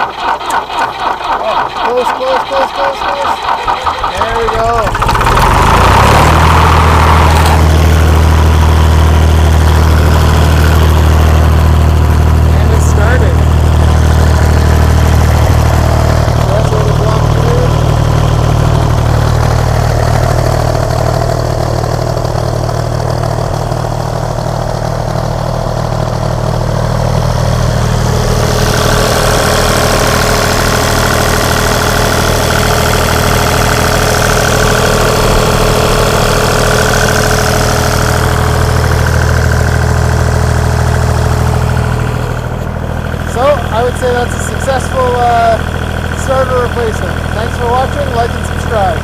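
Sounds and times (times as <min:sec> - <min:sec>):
diesel tractor engine running: 0:00.0 - 0:49.0
high steady whine: 0:27.5 - 0:40.7.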